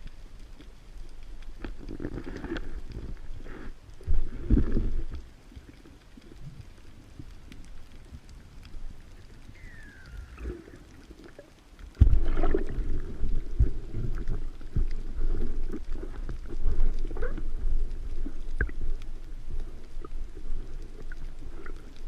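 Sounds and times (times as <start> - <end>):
underwater low rumble: 0.0 - 22.0
short falling squeal: 9.6 - 10.6.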